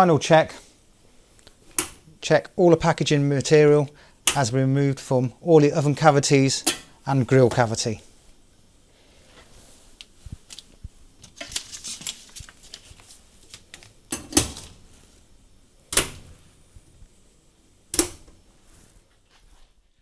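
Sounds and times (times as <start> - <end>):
oven doors banging shut: 14.2 - 14.8, 15.9 - 16.4.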